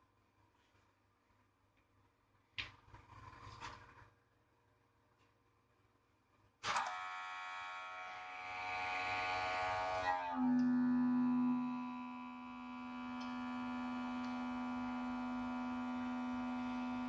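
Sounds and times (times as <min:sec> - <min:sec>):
electric motor hum: 0:08.5 - 0:17.0.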